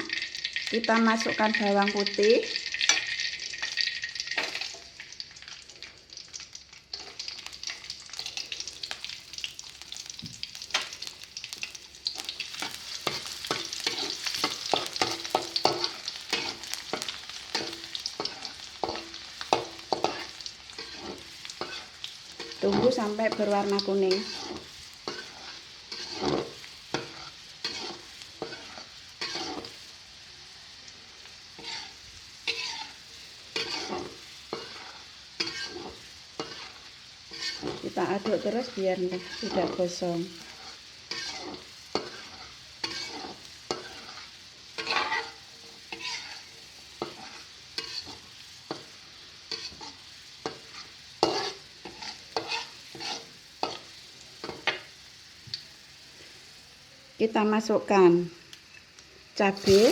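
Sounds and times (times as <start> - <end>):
garlic sizzling in hot oil: 0.0 - 59.9
spatula scraping a pan: 12.1 - 30.0, 31.3 - 54.9, 59.6 - 59.9.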